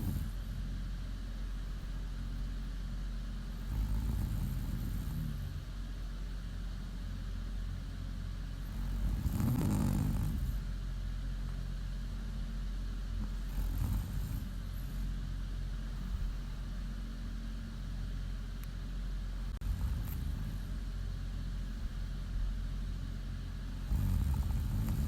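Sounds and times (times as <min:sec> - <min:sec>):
woman snoring: 0:00.0 - 0:00.6, 0:03.6 - 0:05.7, 0:08.6 - 0:10.7, 0:13.4 - 0:15.0, 0:19.6 - 0:20.9, 0:23.8 - 0:25.0.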